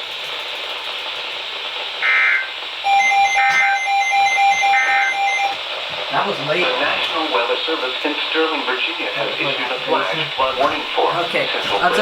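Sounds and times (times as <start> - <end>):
radio hiss: 0.0 - 2.8, 3.4 - 12.0
steady tone with pulsing beeps: 2.0 - 5.6.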